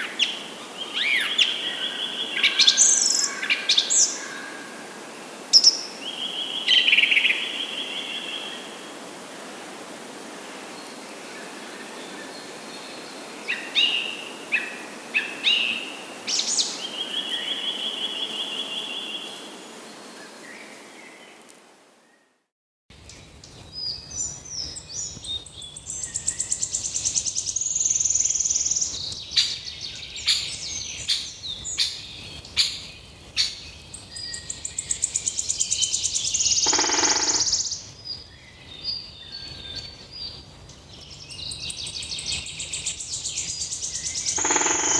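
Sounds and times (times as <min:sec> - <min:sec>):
birds chirping and trilling: 0:00.0 - 0:04.7, 0:23.1 - 0:44.9.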